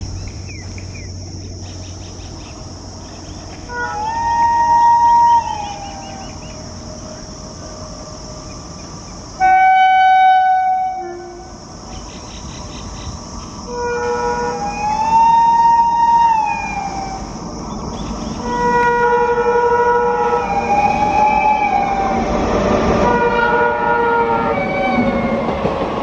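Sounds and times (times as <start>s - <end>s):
locomotive air horn blasts: 3.6s - 6.4s, 9.4s - 11.6s, 13.6s - 17.4s, 18.4s - 22.3s, 23.0s - 25.2s.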